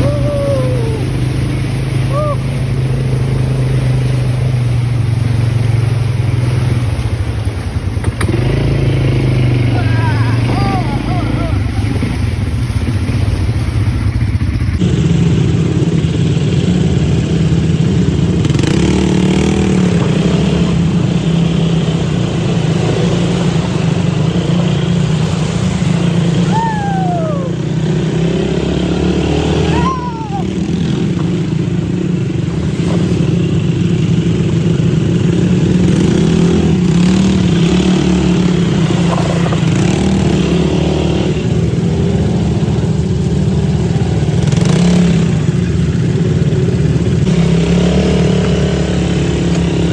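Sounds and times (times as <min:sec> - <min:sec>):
brief falling calls: 0:00.0 - 0:02.7
atv engine running: 0:00.0 - 0:49.9.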